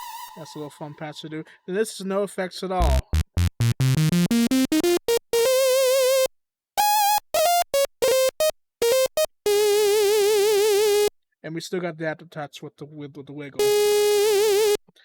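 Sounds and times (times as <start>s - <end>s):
synthesizer sawtooth lead: 2.8s - 5.6s.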